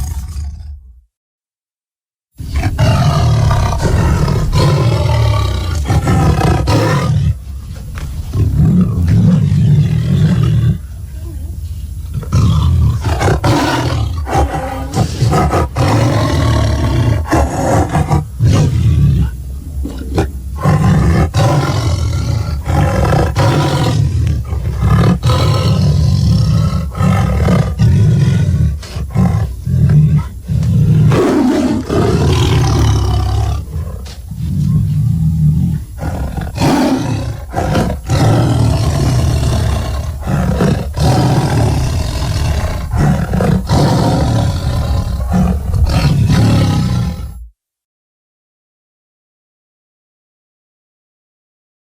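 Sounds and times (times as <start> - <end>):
monster roars and growls: 0.0 - 0.9, 2.4 - 7.4.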